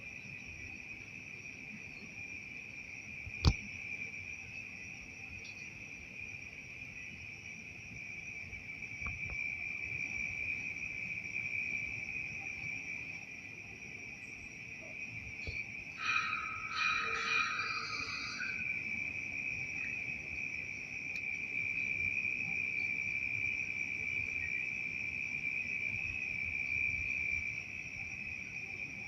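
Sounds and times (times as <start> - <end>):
crickets trilling: 0.0 - 29.0.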